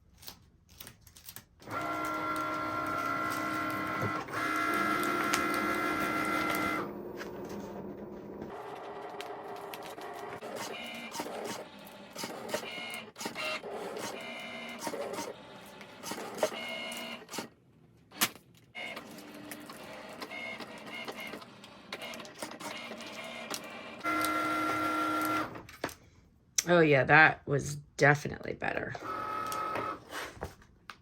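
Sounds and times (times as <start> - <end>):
cutting machine motors whining: 1.6 - 17.5, 18.8 - 25.6, 29.0 - 30.1.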